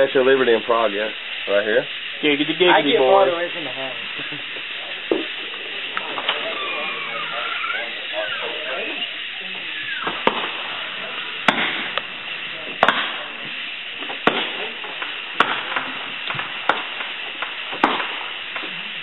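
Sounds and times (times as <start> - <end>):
fireworks banging: 0.0 - 19.0
fireworks hissing: 0.0 - 19.0
small firework pops: 4.4 - 6.6, 9.5 - 19.0.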